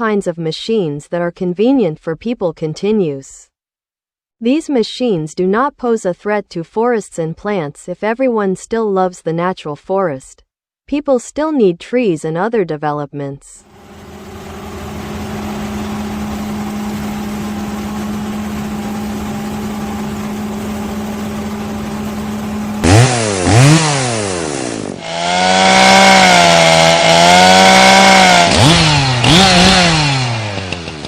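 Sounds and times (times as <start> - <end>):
chainsaw engine revving: 13.7 - 31.0
steady engine drone: 13.7 - 31.0.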